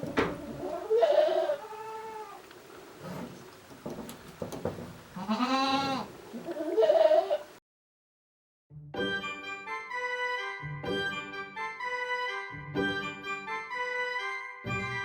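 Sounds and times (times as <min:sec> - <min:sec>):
goats bleating: 0:00.4 - 0:02.4, 0:05.2 - 0:07.5
light knocks: 0:03.1 - 0:05.1.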